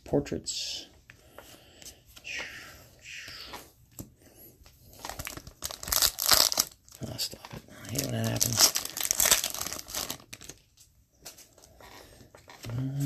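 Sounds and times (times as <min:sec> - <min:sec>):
wrapper tearing and crinkling: 0:05.0 - 0:07.3, 0:07.9 - 0:10.7.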